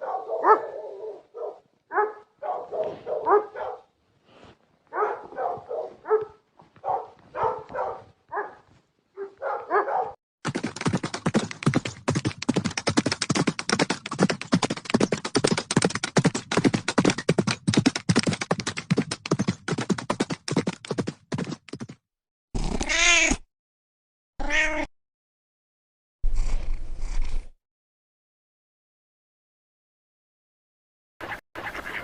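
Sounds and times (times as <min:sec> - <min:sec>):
cat meowing: 0:22.8 - 0:23.4, 0:24.4 - 0:24.9.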